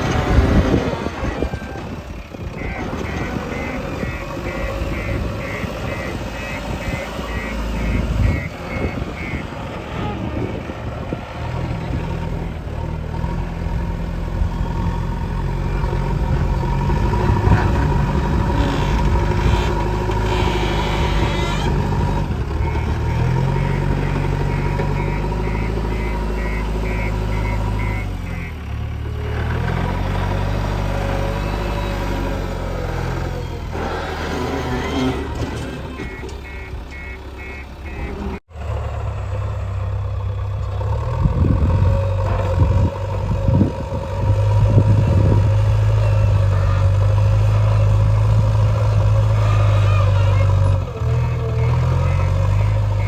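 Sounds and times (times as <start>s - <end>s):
diesel engine revving under load: 0.0s - 53.0s
quick electronic beeps: 2.6s - 9.5s, 22.6s - 28.5s, 36.0s - 38.4s.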